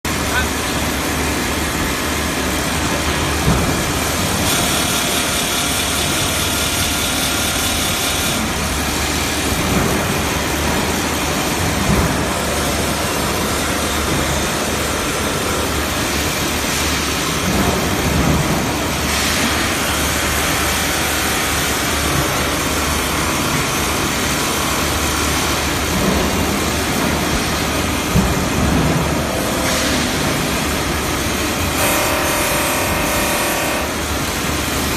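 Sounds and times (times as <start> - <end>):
polishing machine whirring: 31.4 - 34.9.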